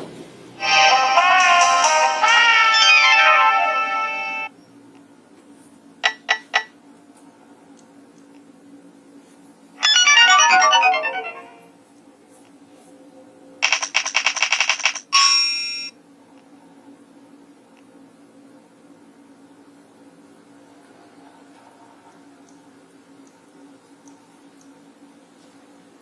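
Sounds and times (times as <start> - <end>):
phone ringtone melodies: 0.6 - 4.5, 9.8 - 11.7.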